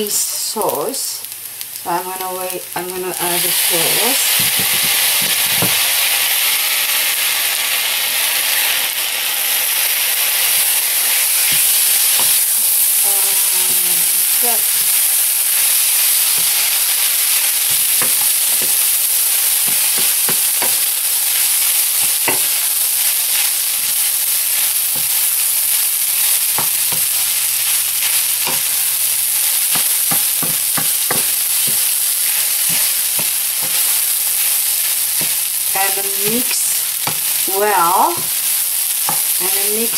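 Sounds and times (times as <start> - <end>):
rice sizzling in a hot pan: 0.0 - 39.9
spatula scraping a pan: 29.7 - 35.5.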